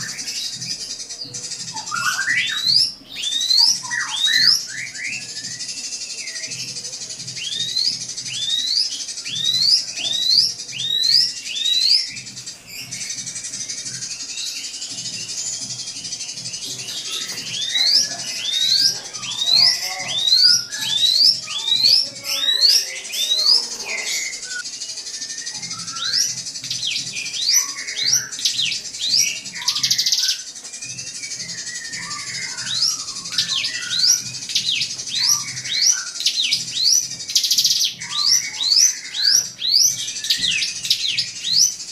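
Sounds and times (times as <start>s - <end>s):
bird whistling calls: 0.0s - 41.9s.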